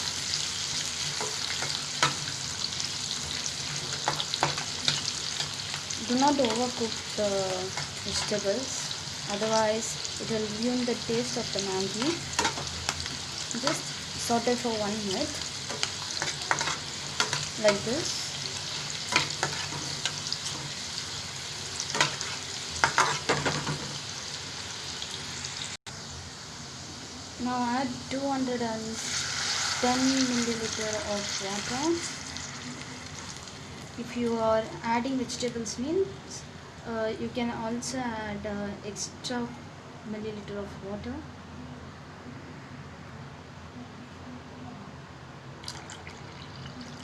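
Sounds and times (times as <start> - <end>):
vegetables sizzling in oil: 0.0 - 36.4
spoon scraping a pan: 15.7 - 20.9, 21.8 - 23.7.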